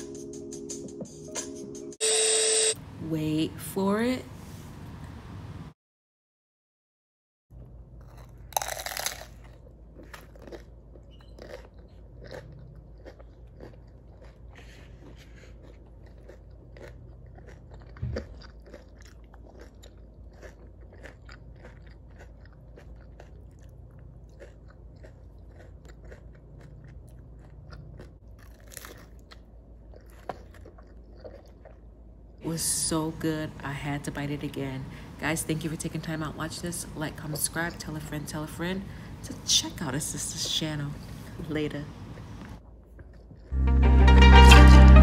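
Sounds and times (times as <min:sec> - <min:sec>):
low steady hum: 0:07.6 - 0:45.0
crunchy taco bite: 0:07.9 - 0:31.9
chewing with crackles: 0:08.0 - 0:32.4, 0:42.1 - 0:43.6.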